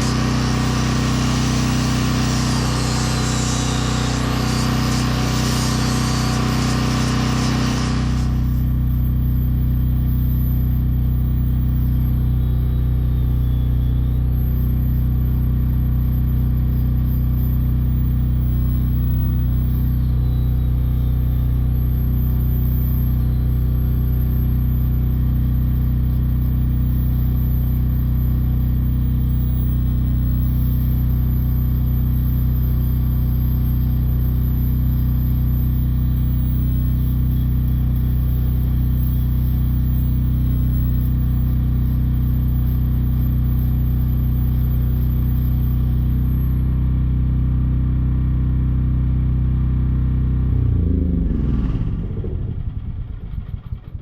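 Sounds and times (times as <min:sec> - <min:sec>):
power carving tool whining: 0:00.0 - 0:09.0.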